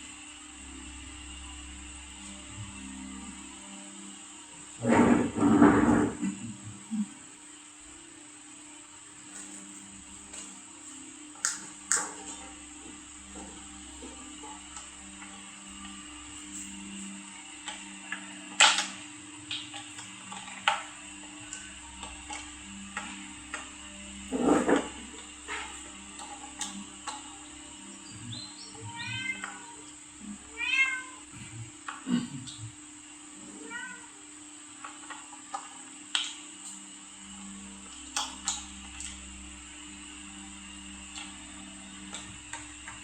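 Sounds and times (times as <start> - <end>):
faint high whine: 0.0 - 43.0
steady low hum: 0.0 - 43.0
cat meowing: 28.7 - 31.2, 33.5 - 34.2.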